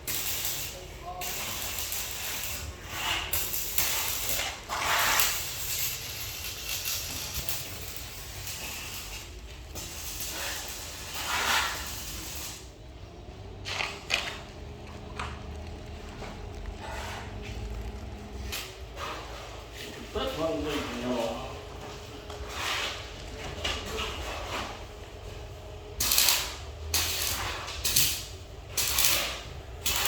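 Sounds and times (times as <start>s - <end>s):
hissing and crackling bursts: 0.0s - 12.8s, 13.8s - 19.5s, 26.0s - 30.0s.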